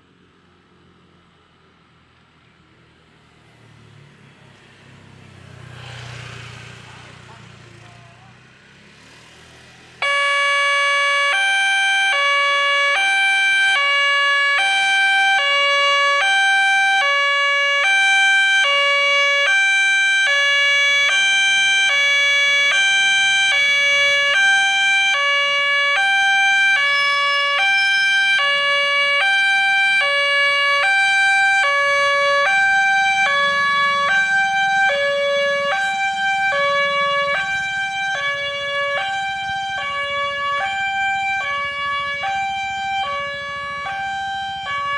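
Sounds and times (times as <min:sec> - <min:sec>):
two-tone level crossing siren: 0:10.0 - 0:44.9.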